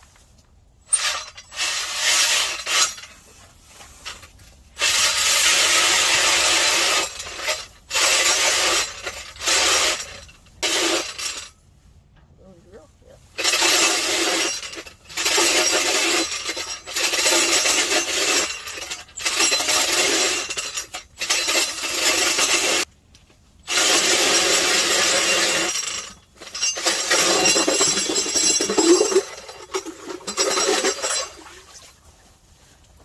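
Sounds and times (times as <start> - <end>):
auger blades scraping ice: 23.7 - 31.9.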